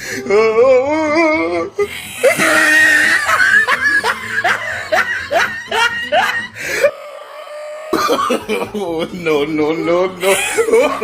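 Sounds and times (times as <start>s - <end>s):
person laughing: 1.8s - 6.9s, 8.0s - 11.0s.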